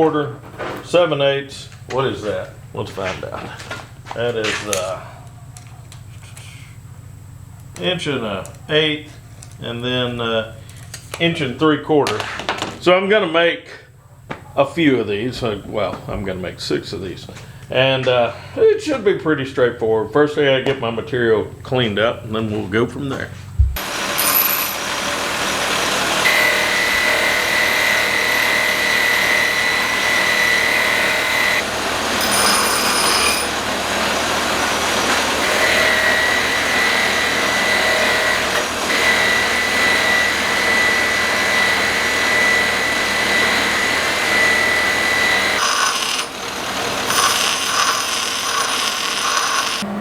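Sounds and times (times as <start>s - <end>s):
power grinder grinding steel: 23.8s - 50.0s.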